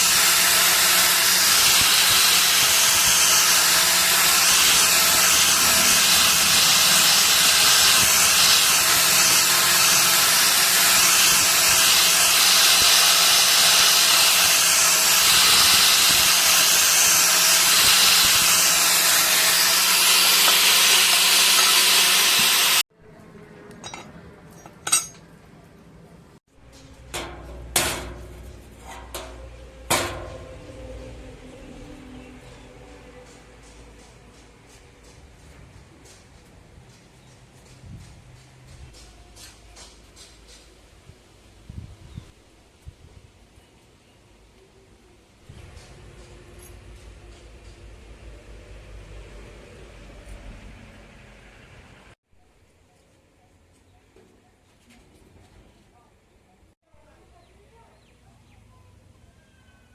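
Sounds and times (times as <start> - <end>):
loud steady hiss: 0.0 - 22.8
hand tools tapping sheet metal: 23.7 - 25.3, 26.8 - 30.6.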